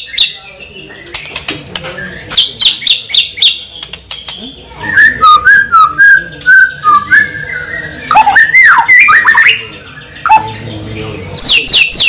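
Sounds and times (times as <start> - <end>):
bird whistling: 4.8 - 9.6, 10.2 - 10.6.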